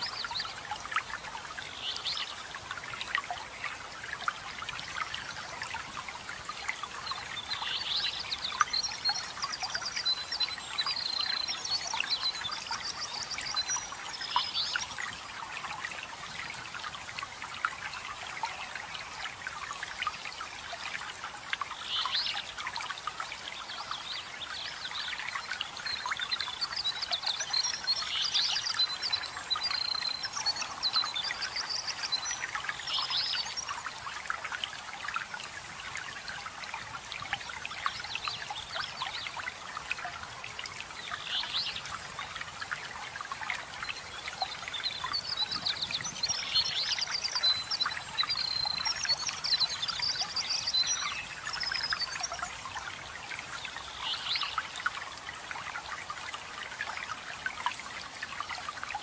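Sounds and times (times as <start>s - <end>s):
songbirds chirping: 0.0s - 59.0s
stream trickling and splashing: 0.0s - 59.0s.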